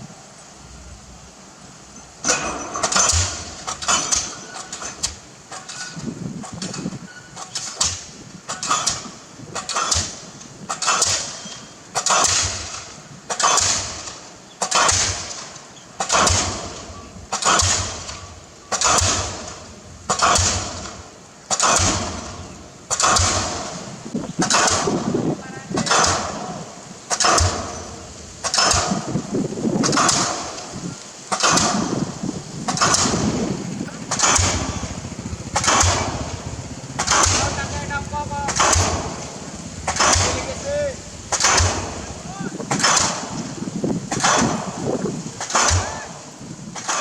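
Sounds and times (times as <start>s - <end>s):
diesel pile hammer banging: 1.9s - 47.0s.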